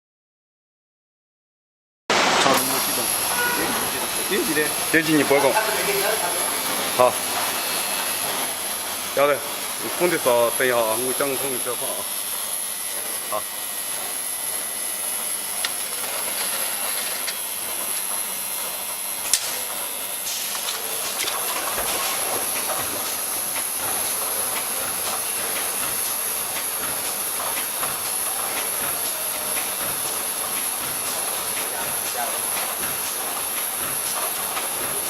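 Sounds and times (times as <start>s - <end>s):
washing machine hissing: 2.1s - 35.0s
high constant whine: 2.4s - 7.6s.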